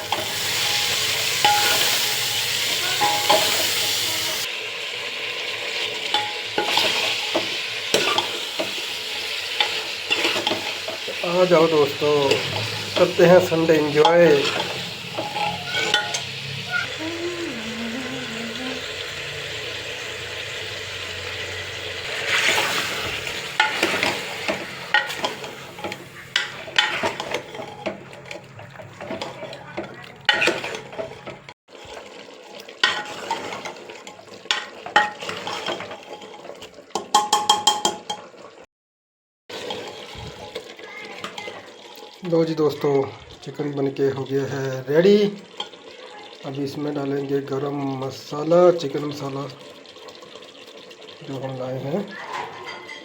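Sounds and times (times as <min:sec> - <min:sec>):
chicken sizzling in a pan: 0:00.0 - 0:38.1, 0:39.5 - 0:52.9
utensil stirring in a pan: 0:00.0 - 0:38.6, 0:39.5 - 0:44.3, 0:45.0 - 0:53.0.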